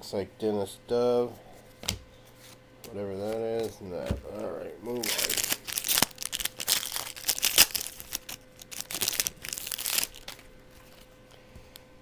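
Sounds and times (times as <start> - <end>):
plastic wrapper tearing and crinkling: 4.9 - 11.1.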